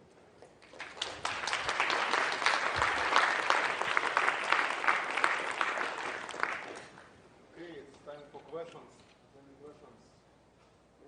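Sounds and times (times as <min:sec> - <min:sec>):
audience applauding: 0:00.6 - 0:07.1.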